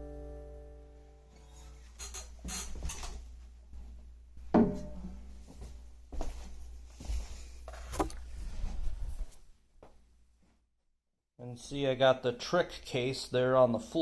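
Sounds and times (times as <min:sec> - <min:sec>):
handling knocks and thumps: 0:03.8 - 0:06.4.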